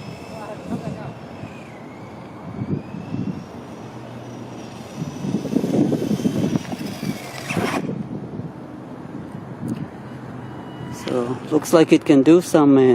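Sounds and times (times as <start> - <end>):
small electric motor whining: 0.0 - 8.2, 9.6 - 11.8.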